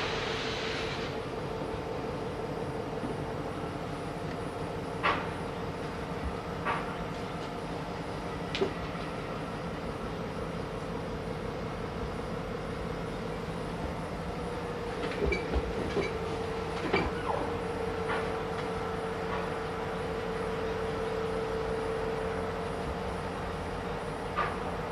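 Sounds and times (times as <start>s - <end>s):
machinery hum: 0.0s - 24.9s
metallic clanks and squeals: 16.8s - 17.6s.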